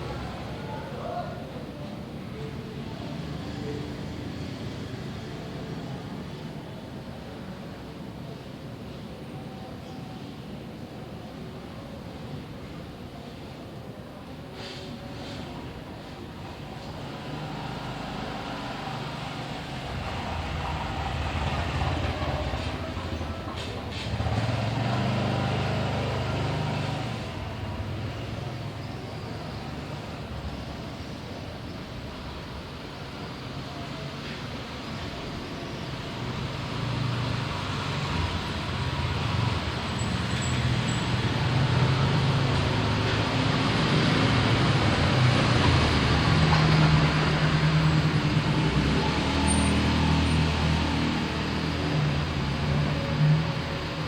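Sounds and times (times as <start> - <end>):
traffic noise: 0.0 - 54.0
vehicles passing with road noise: 0.0 - 54.0
vehicle passing: 17.1 - 28.7.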